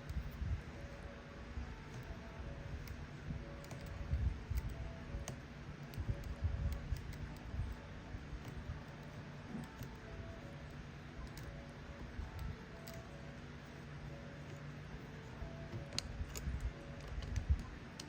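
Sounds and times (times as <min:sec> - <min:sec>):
hex wrench clicking and knocking: 0:02.8 - 0:13.2, 0:15.2 - 0:18.0.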